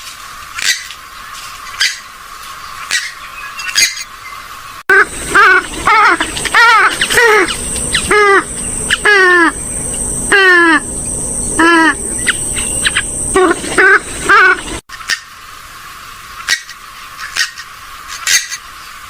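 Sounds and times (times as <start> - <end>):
waterbird calls sliding down: 11.6 - 15.3.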